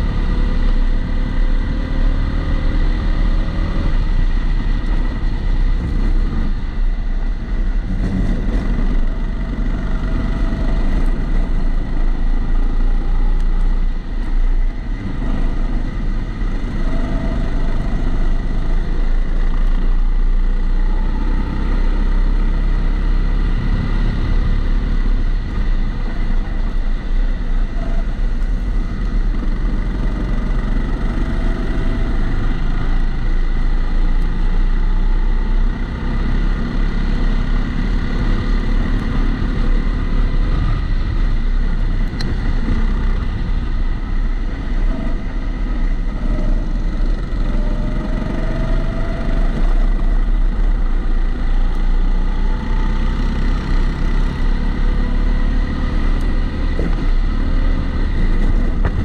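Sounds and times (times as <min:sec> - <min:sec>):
kart engine running: 0:00.0 - 0:59.0.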